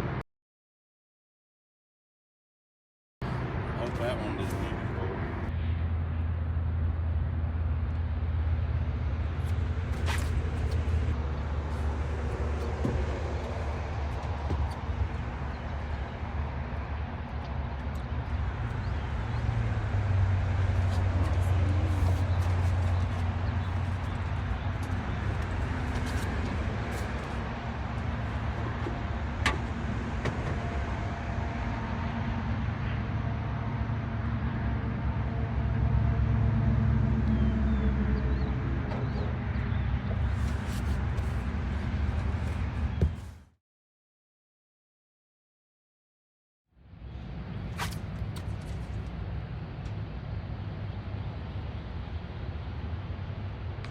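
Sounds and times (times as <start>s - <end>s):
boat motor humming: 6.6s - 31.3s.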